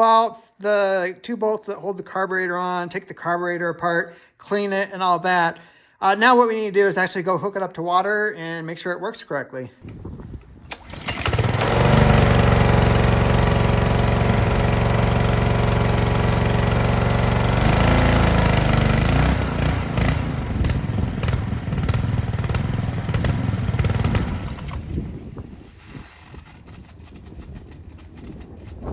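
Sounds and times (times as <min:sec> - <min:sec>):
pressure washer engine running: 0:10.7 - 0:26.6.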